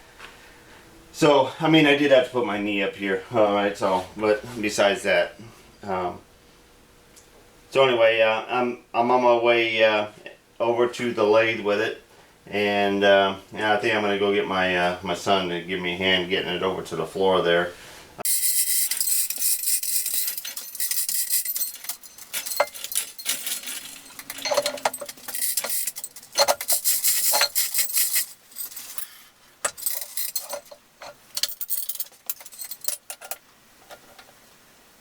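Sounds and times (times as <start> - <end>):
metal clinking and jangling: 18.3 - 33.4.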